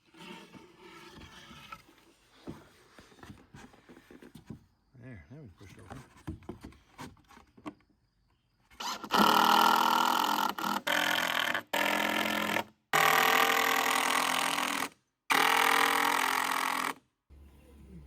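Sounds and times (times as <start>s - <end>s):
power drill bursts: 8.8s - 17.0s.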